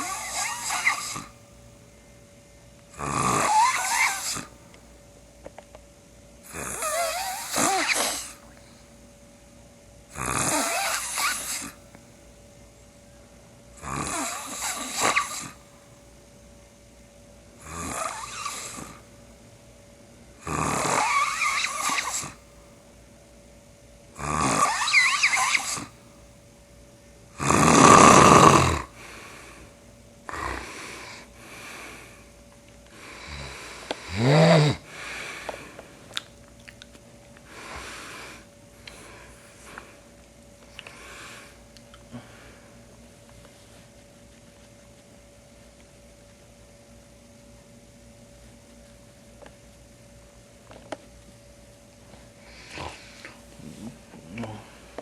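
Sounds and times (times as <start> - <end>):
man snoring loudly: 0.0 - 1.4, 2.9 - 4.5, 6.5 - 8.4, 10.1 - 11.8, 13.8 - 15.6, 17.6 - 19.0, 20.4 - 22.4, 24.2 - 25.9, 27.4 - 29.1, 30.3 - 32.1, 33.0 - 35.5.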